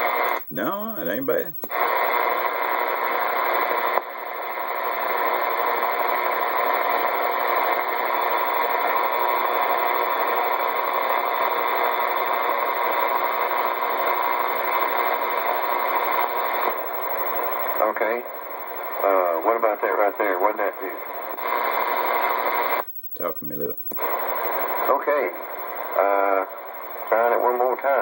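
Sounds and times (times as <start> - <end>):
radio speaker static hiss: 0.0 - 28.0.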